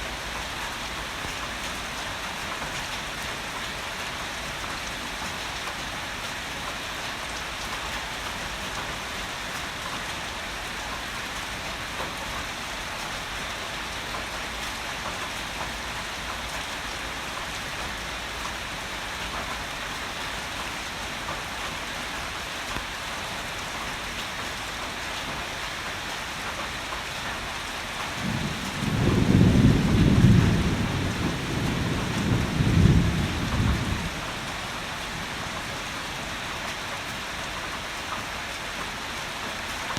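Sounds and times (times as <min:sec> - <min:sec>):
thunder rumbling: 0:28.2 - 0:35.6.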